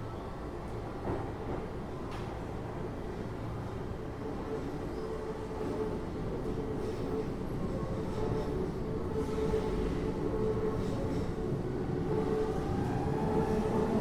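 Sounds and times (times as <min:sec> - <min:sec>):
train wheels rumbling on rail: 0:00.6 - 0:02.9.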